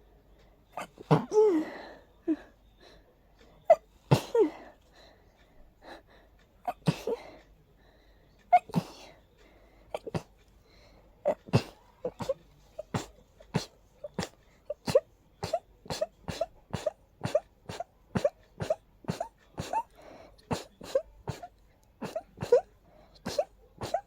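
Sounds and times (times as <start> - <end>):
person sneezing: 0.8 - 2.4, 6.7 - 7.2, 8.5 - 9.1, 11.3 - 19.9, 20.5 - 24.0.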